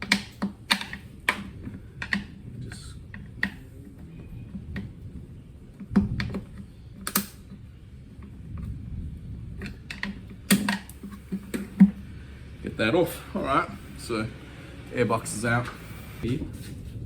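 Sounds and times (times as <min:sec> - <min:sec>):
plastic clicks and knocks: 0:00.0 - 0:02.4, 0:03.1 - 0:08.8, 0:09.5 - 0:12.0.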